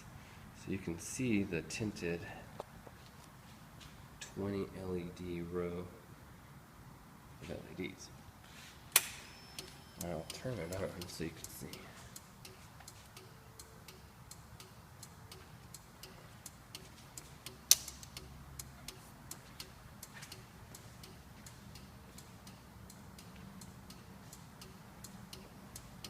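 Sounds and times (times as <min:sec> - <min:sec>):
sharp click: 0:08.9 - 0:10.1, 0:17.2 - 0:18.3
turn-signal flasher ticking: 0:09.0 - 0:26.0.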